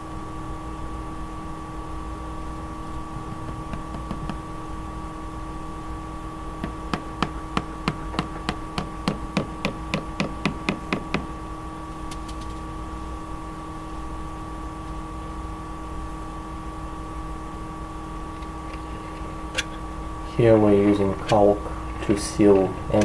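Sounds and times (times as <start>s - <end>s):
hammer striking nails: 3.2s - 4.4s, 6.6s - 11.4s.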